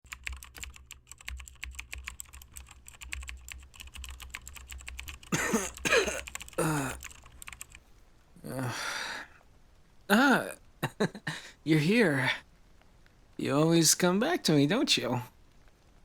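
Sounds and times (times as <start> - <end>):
man coughing: 5.3 - 7.0, 8.5 - 9.2, 10.1 - 12.4.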